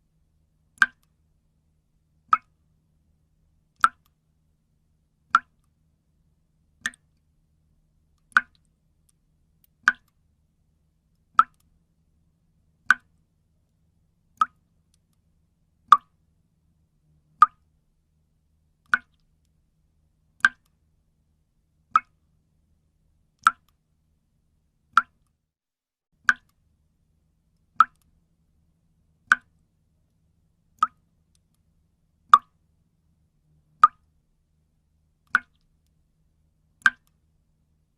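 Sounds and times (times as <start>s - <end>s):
water drops plopping into water: 0.8s - 1.1s, 2.3s - 2.6s, 3.8s - 4.1s, 5.3s - 5.6s, 6.8s - 7.1s, 8.2s - 8.7s, 9.8s - 10.2s, 11.4s - 11.7s, 12.9s - 13.2s, 14.4s - 14.6s, 17.4s - 17.6s, 18.9s - 19.3s, 20.4s - 20.7s, 21.9s - 22.2s, 24.9s - 25.2s, 26.2s - 26.6s, 27.8s - 28.1s, 29.3s - 29.6s, 30.8s - 31.0s, 32.3s - 32.6s, 33.8s - 34.1s, 35.3s - 35.7s, 36.8s - 37.1s.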